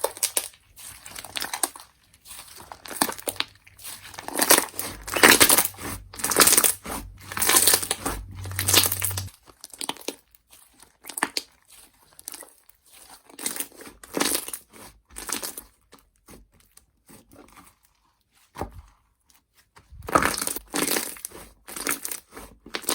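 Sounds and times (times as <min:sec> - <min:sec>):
slime squelching by hand: 0:00.0 - 0:09.3.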